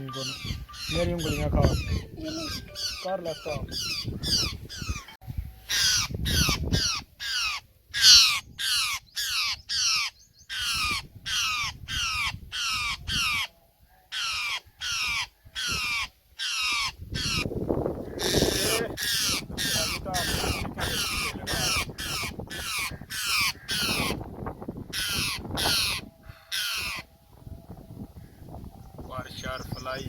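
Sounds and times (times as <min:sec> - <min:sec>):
parakeet screeching in distress: 0:00.2 - 0:05.1, 0:05.7 - 0:13.5, 0:14.1 - 0:17.5, 0:18.1 - 0:24.2, 0:24.9 - 0:27.1.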